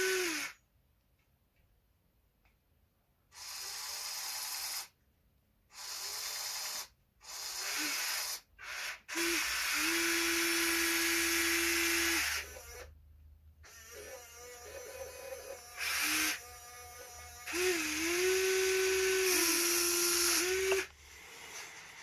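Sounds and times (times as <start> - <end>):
small electric motors running: 0.0 - 0.5, 5.8 - 12.9, 13.6 - 22.0.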